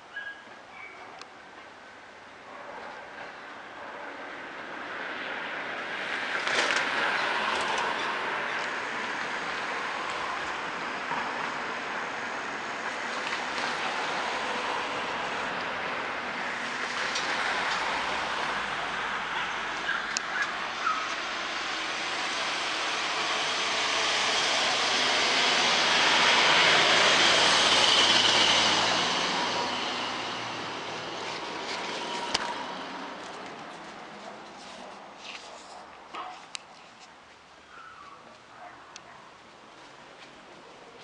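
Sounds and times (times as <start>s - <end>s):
vehicle passing by: 3.6s - 35.6s.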